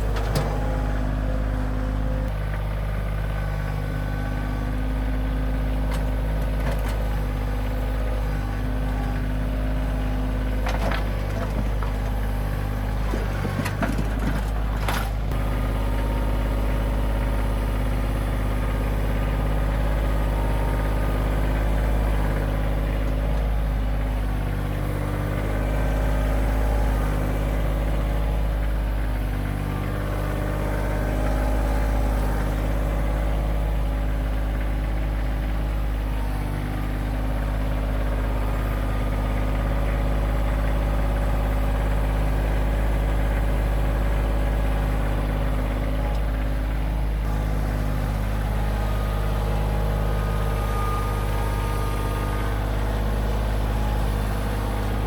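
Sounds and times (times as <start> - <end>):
engine knocks: 0.0 - 55.0
tractor diesel engine running: 0.0 - 55.0.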